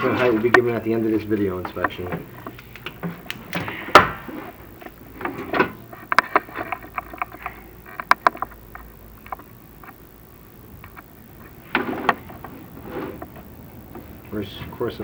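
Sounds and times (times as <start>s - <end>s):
clicks and taps: 1.6s - 4.2s, 6.0s - 10.0s.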